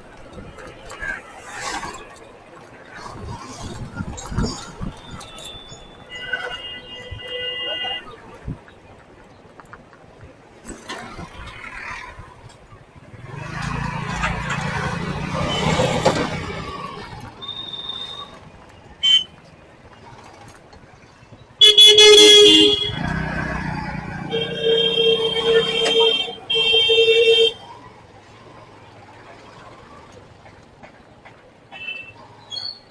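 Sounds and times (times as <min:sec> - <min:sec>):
vehicle engine passing: 0:13.1 - 0:17.1, 0:22.6 - 0:26.1
car horns honking: 0:19.0 - 0:19.3, 0:21.6 - 0:23.3, 0:24.2 - 0:27.6.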